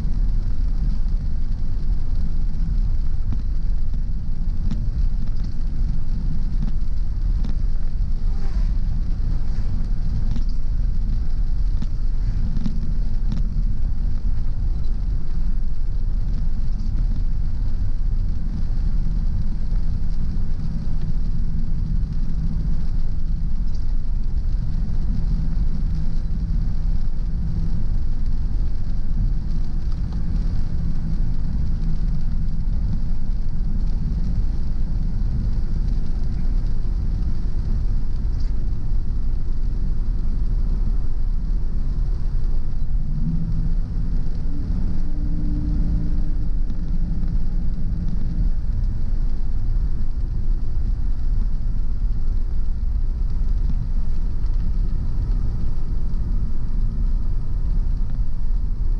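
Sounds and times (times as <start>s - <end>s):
engine and tyre rumble: 0.0s - 58.9s
humming engine note: 21.0s - 51.2s.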